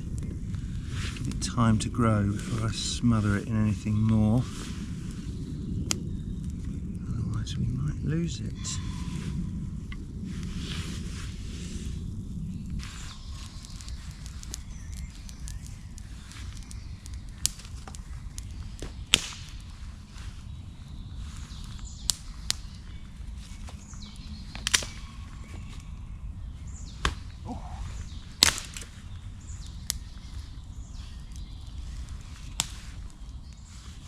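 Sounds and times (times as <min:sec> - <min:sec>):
low steady rumble: 0:00.0 - 0:18.8
campfire crackling and popping: 0:00.0 - 0:34.0.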